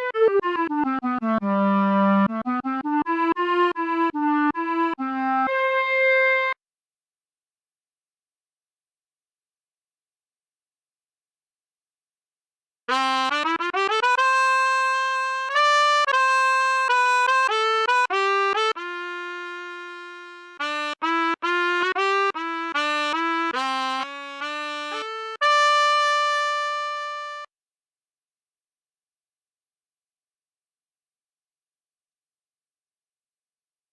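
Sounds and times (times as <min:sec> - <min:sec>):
sampled brass solo melody: 0:00.0 - 0:06.6, 0:12.9 - 0:27.5.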